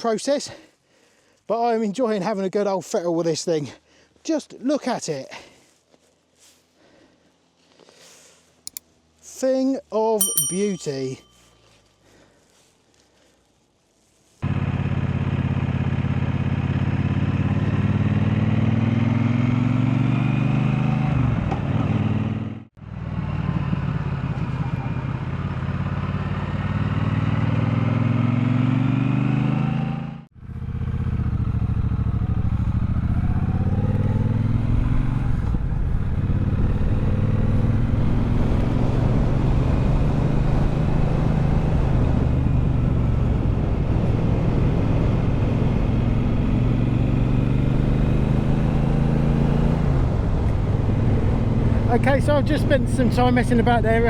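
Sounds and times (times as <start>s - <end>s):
motorcycle engine revving: 14.4s - 54.0s.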